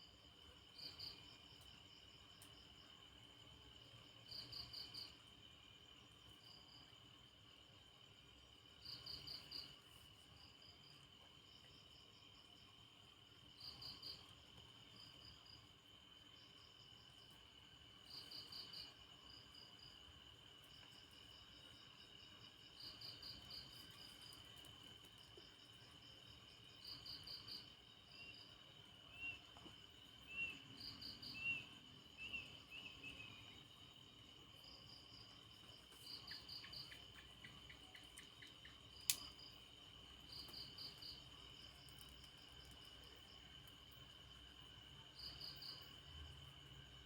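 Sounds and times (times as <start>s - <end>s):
cricket chirping: 0.0s - 47.0s.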